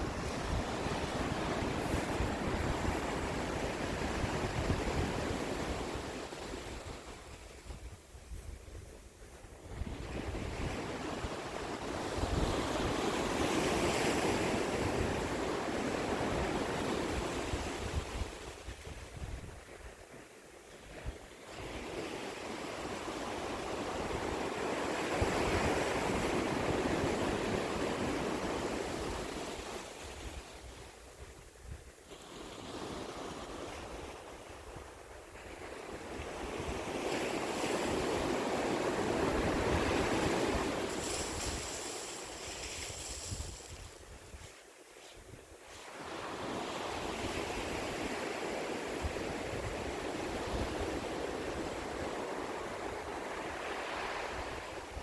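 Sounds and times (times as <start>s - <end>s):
ocean waves washing ashore: 0.0s - 55.0s.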